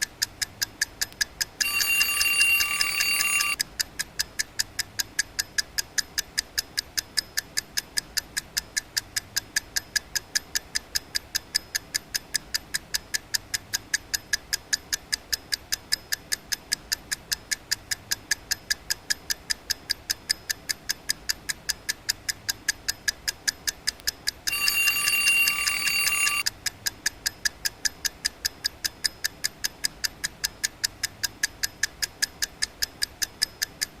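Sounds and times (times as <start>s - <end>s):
alarm clock ringing: 1.6s - 3.6s, 24.5s - 26.5s
alarm clock ticking: 1.6s - 3.7s, 22.7s - 26.5s.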